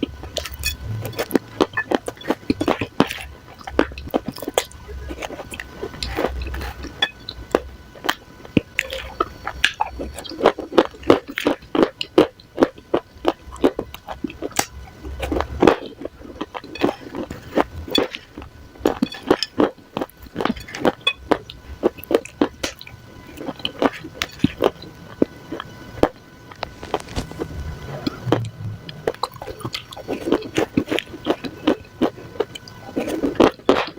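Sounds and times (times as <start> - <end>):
dry clay crumbs crunching: 25.5 - 33.9.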